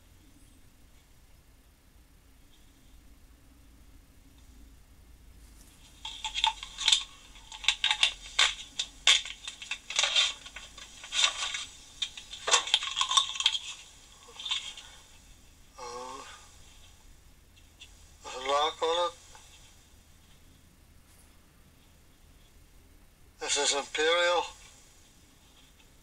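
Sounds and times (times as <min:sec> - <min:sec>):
small metal tools clinking: 0:06.0 - 0:14.9.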